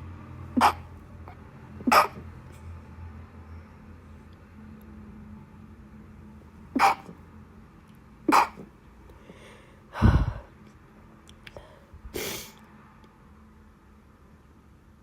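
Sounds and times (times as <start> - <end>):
woman sneezing: 0.6 - 0.8, 1.9 - 2.2, 6.8 - 7.1, 8.3 - 8.7.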